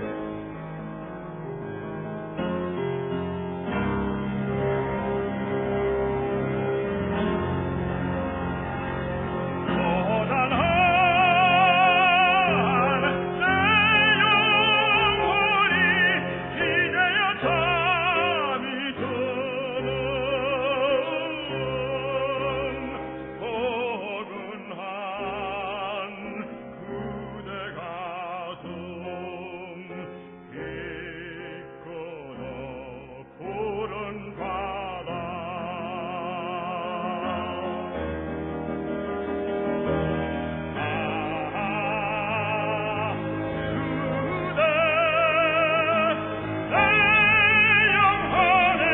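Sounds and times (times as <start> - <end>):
musical accompaniment: 0.0 - 48.9
tenor singing operatically: 9.6 - 26.6, 27.4 - 38.0, 40.7 - 48.9.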